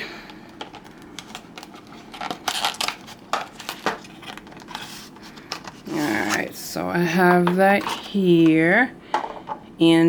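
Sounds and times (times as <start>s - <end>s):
packaging crinkling and tearing: 0.5s - 6.5s.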